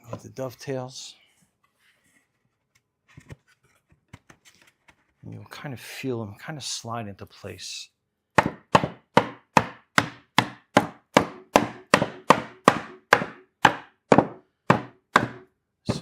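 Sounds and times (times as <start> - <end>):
rubber mallet tapping wood: 8.4 - 16.0.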